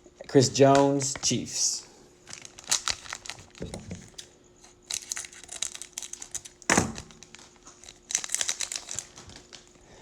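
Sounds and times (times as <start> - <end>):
foil wrapper crinkling: 2.2 - 9.9
cards being handled: 2.3 - 9.7.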